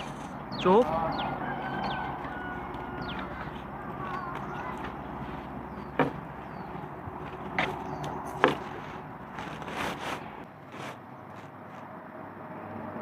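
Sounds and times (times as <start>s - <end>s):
rustling: 2.2s - 11.9s
sharp knocks: 5.8s - 6.9s, 7.5s - 8.9s.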